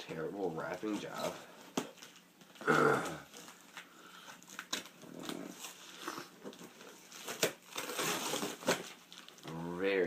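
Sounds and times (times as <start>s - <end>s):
plastic crinkling and rustling: 0.5s - 9.8s
package wrapping being torn: 3.2s - 9.7s.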